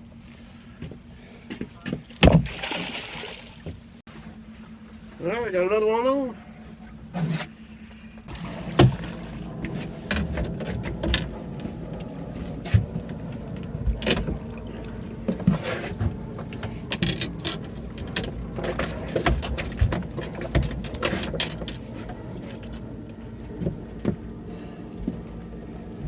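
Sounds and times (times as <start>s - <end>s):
knocks of boat handling: 1.6s - 2.6s, 8.4s - 11.8s, 13.8s - 22.9s
steady low rumble: 3.8s - 26.0s.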